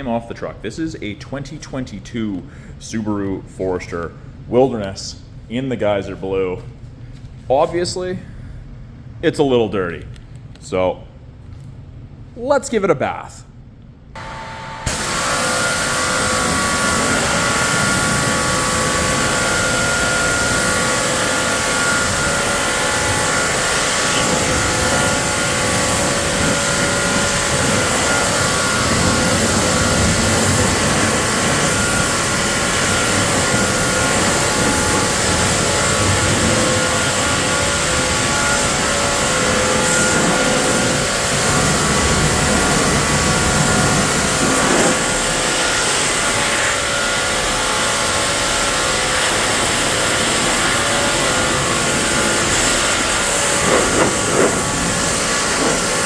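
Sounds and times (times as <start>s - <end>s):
motor whine: 14.2s - 56.0s
pressure washer spraying: 14.2s - 56.0s.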